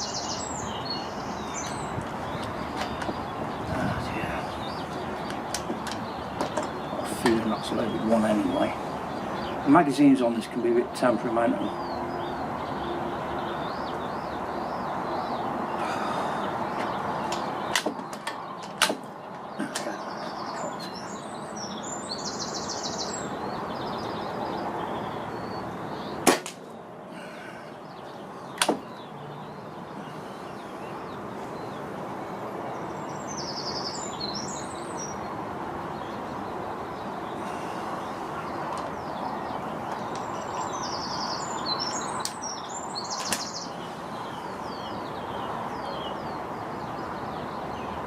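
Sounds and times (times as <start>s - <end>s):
birds chirping: 0.0s - 48.0s
wind noise: 1.6s - 7.2s
air rifle shot: 26.2s - 26.6s.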